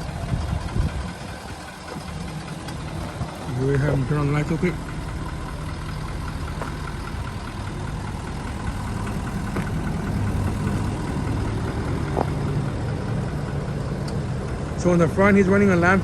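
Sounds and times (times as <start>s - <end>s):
diesel engine idling: 0.0s - 16.0s.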